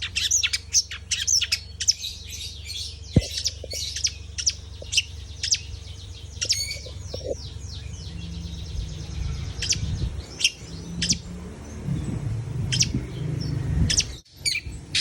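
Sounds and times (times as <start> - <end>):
bird calling high chirps: 0.0 - 15.0
low steady rumble: 0.0 - 15.0.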